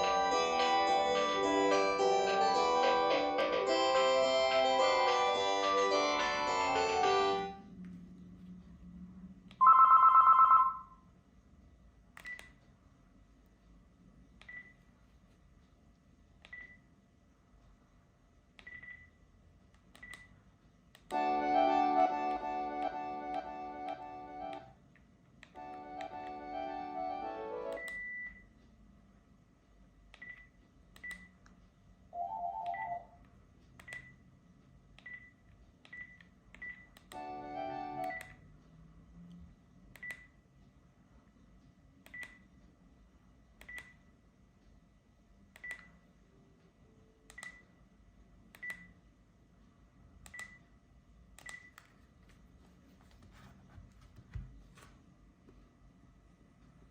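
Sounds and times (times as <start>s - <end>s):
ringtone melody: 0.0s - 7.6s, 9.6s - 10.9s, 21.2s - 24.7s, 25.6s - 27.8s, 32.2s - 33.2s, 37.2s - 38.2s
phone key clicks with beeps: 42.1s - 42.4s.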